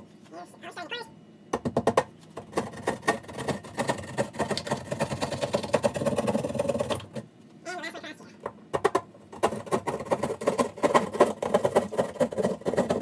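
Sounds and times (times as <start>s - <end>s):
hand saw cutting drywall: 2.5s - 7.2s, 9.4s - 13.0s.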